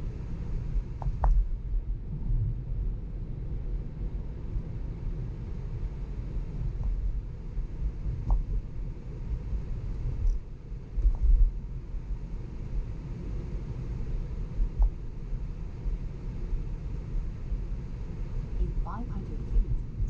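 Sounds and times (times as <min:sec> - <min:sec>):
road and tyre rumble: 0:00.0 - 0:20.0.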